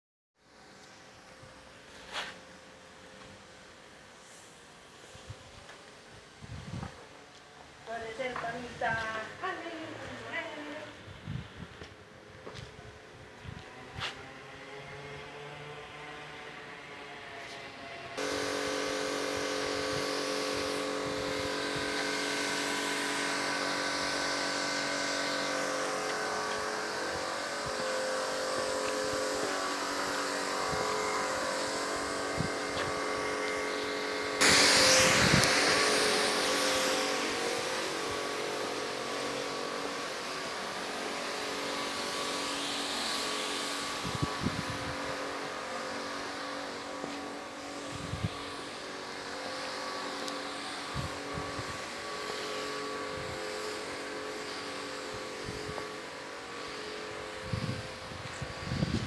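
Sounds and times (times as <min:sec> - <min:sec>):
loud hiss: 0:18.2 - 0:59.0
machine motor humming: 0:18.2 - 0:59.0.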